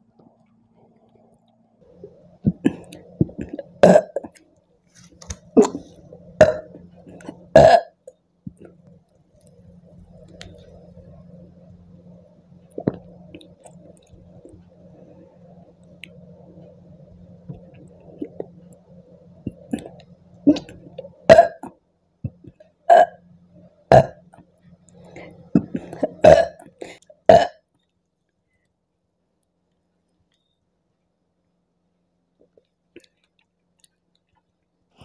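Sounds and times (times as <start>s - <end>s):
woman burping: 2.5s - 4.3s, 5.6s - 6.8s, 7.5s - 8.0s, 19.7s - 21.7s, 22.9s - 23.2s, 23.9s - 24.2s, 25.6s - 27.6s.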